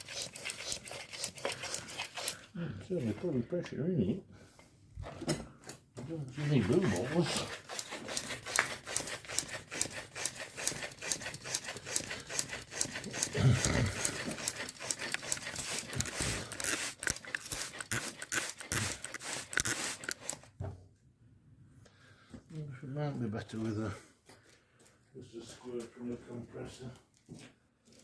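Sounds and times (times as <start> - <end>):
hand pump hissing strokes: 0.0 - 2.5, 6.3 - 20.5.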